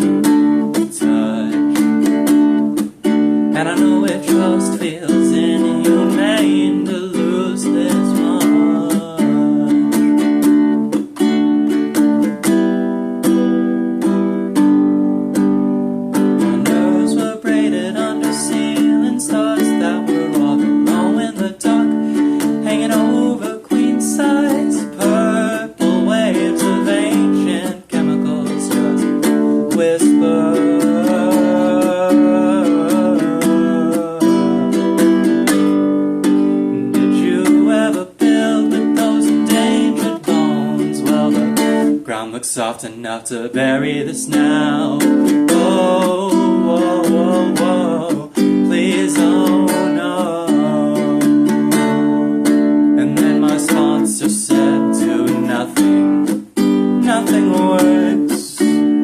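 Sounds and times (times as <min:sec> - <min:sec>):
strummed acoustic stringed instrument: 0:00.0 - 0:59.0.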